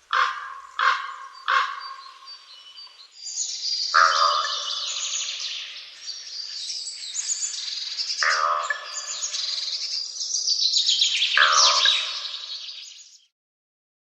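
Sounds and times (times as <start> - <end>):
crows cawing: 0.0 - 2.2, 4.0 - 5.2, 8.2 - 9.5, 11.4 - 12.5
small birds chirping: 0.1 - 13.3.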